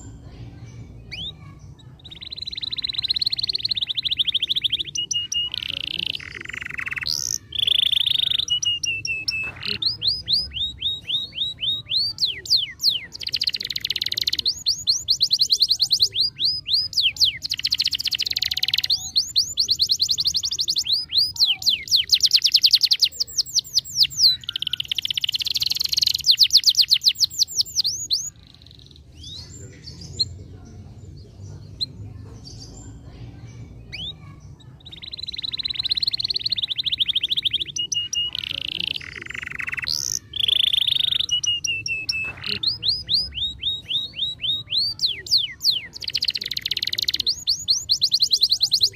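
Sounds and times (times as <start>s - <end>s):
canary singing trills: 0.0s - 48.9s.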